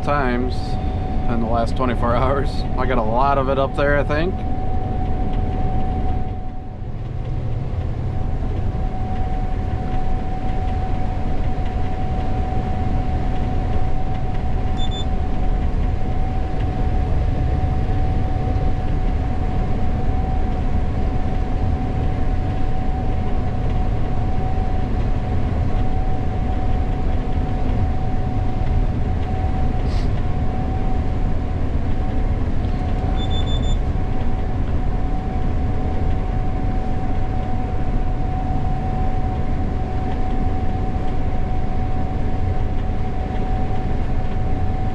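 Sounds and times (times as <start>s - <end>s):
combine harvester droning: 0.0s - 44.9s
short electronic beeps: 14.8s - 15.1s, 33.1s - 33.8s.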